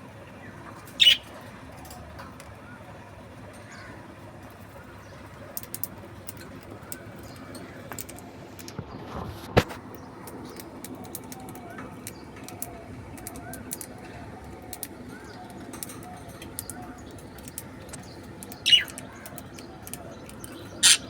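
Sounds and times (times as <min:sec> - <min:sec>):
budgerigar chattering: 0:01.0 - 0:01.3, 0:18.6 - 0:19.2, 0:20.6 - 0:21.0.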